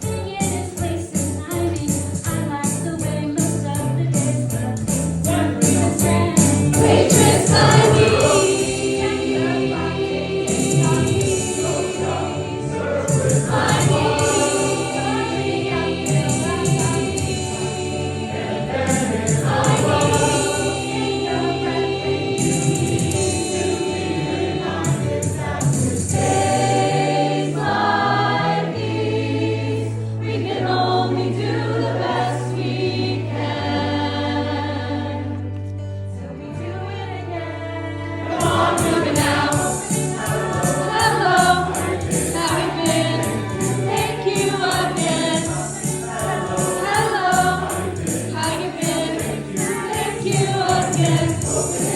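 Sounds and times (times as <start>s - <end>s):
accompaniment with bass and beat: 2.2s - 27.2s, 38.4s - 51.9s
choir singing: 5.3s - 35.4s, 36.4s - 51.9s.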